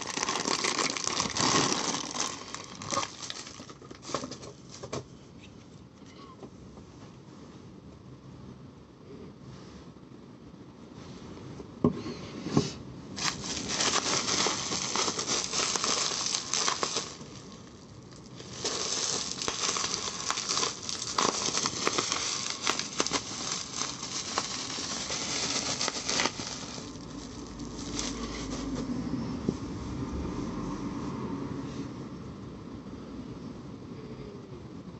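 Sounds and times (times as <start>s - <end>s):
packaging crinkling and rustling: 0.0s - 5.0s, 13.2s - 28.9s.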